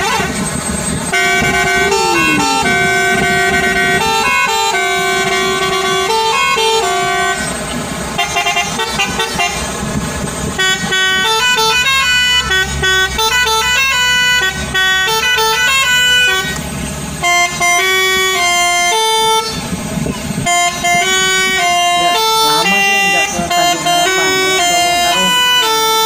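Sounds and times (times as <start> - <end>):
musical truck air horn: 0.0 - 0.4, 1.1 - 7.6, 8.2 - 9.8, 10.5 - 16.6, 17.2 - 26.0
low rumble: 0.6 - 4.5.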